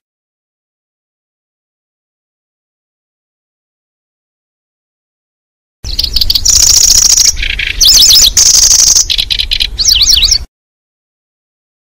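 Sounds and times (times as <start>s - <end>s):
recorded bird song trills: 5.8s - 10.5s
quick chirping notes: 5.9s - 10.5s.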